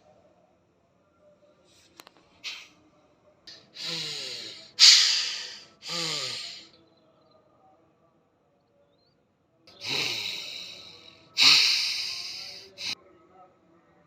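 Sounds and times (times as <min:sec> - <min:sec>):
person breathing forcefully: 0:03.5 - 0:06.7, 0:09.8 - 0:13.0
voiced groan: 0:03.5 - 0:06.7.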